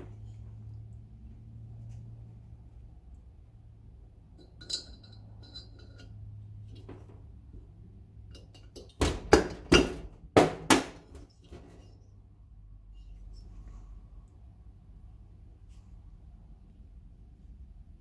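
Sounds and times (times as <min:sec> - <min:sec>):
light metallic clinks: 0:04.4 - 0:06.3.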